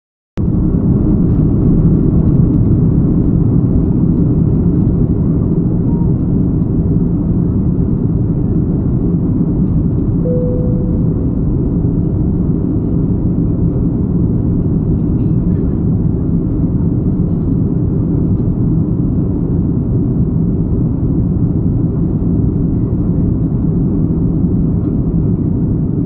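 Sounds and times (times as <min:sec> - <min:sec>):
aeroplane engines rumbling: 0:00.4 - 0:26.0
brief steady tone: 0:10.2 - 0:11.8.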